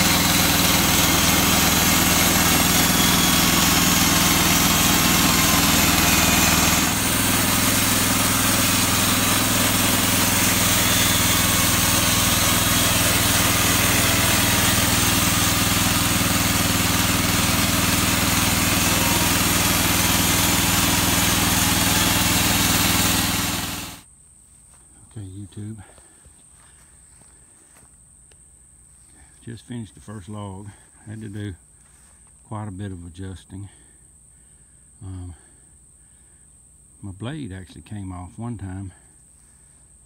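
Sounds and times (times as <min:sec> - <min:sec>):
sawmill gasoline engine running: 0:00.0 - 0:24.0.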